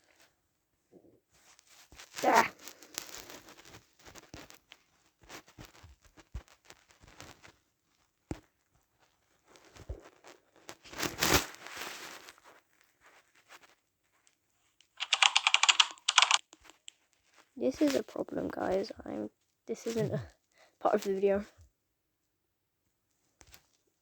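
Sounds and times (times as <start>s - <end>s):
rustling and crinkling: 0.0s - 24.0s
sharp clicks: 15.0s - 17.0s.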